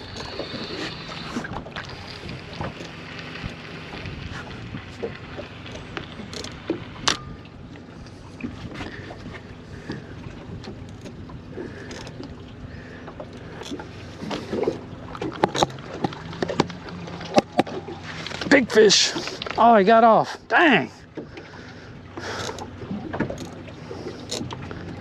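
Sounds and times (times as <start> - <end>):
low hum and water wash: 0.0 - 25.0
sharp clicks and knocks: 15.2 - 18.5.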